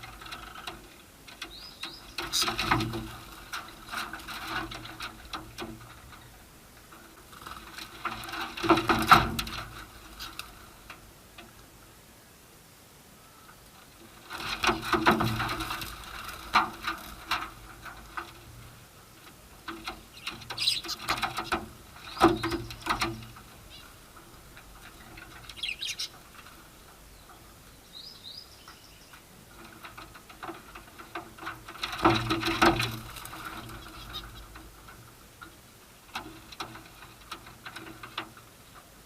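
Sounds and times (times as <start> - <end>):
birds chirping: 1.4 - 2.7, 20.0 - 29.3, 33.6 - 34.7
wings flapping and clattering: 1.8 - 6.4, 7.0 - 10.7, 14.3 - 18.7, 19.6 - 27.0, 29.5 - 35.1.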